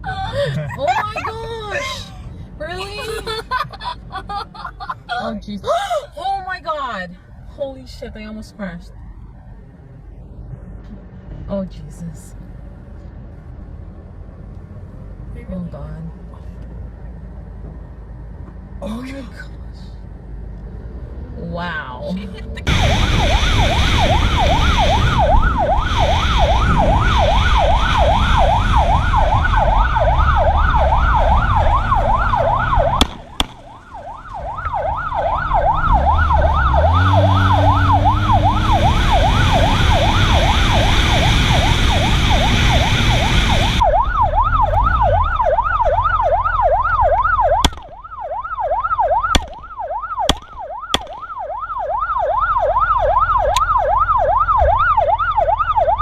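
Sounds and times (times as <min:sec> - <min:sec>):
siren yelping: 0:00.0 - 0:02.1, 0:22.0 - 0:56.0
engine and road noise: 0:00.0 - 0:56.0.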